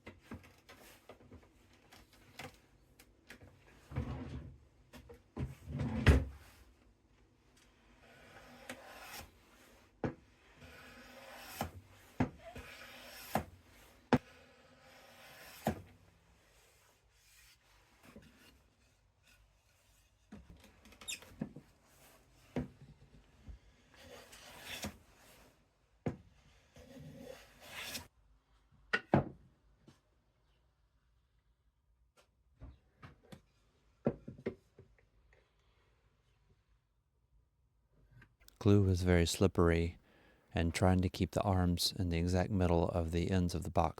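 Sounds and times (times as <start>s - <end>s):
hand plane scraping wood: 8.0s - 9.3s, 10.5s - 11.8s, 12.6s - 13.5s, 27.2s - 28.0s.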